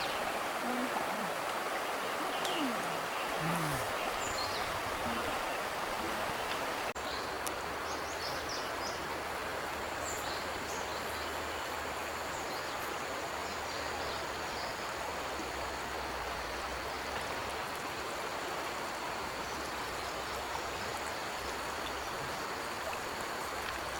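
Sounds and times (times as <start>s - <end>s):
flowing water rushing: 0.0s - 7.0s
faint bird chirps: 2.0s - 5.7s.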